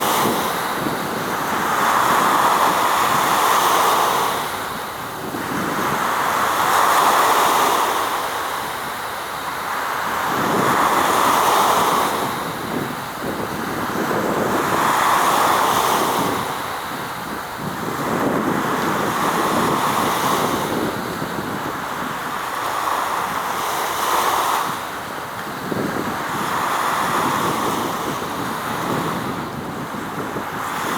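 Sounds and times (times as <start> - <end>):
waves washing in: 0.0 - 30.9.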